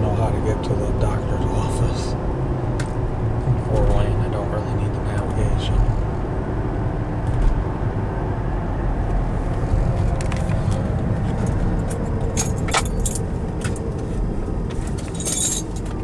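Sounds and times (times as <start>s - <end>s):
road and tyre rumble in car: 0.0s - 16.0s
light rattles: 9.5s - 16.0s.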